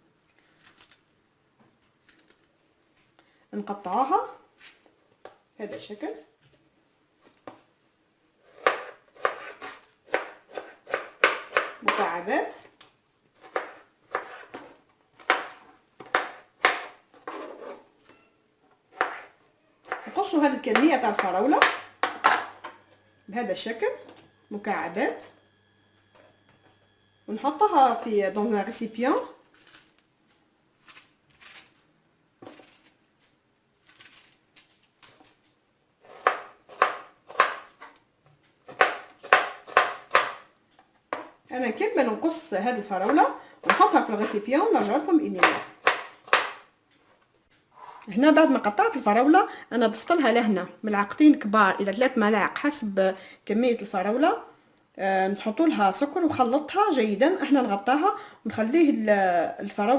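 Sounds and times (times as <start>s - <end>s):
knife chopping strawberries: 8.5s - 12.1s, 13.4s - 17.5s, 36.1s - 37.9s, 38.7s - 40.4s, 43.0s - 46.6s
knife cutting on cutting board: 13.4s - 14.7s.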